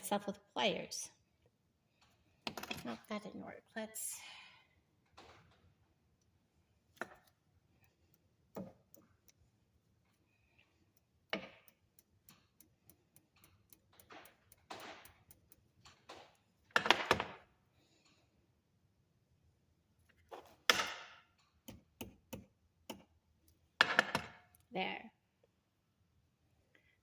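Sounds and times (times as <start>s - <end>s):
pliers clicking on wire: 10.1s - 16.2s.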